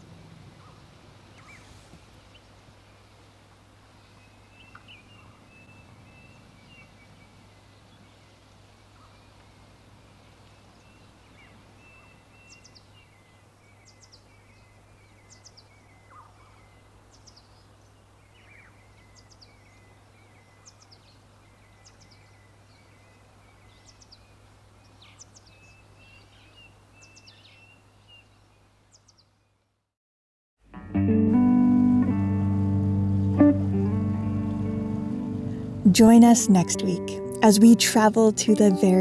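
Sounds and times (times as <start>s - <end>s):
low steady hum: 31.9s - 39.0s.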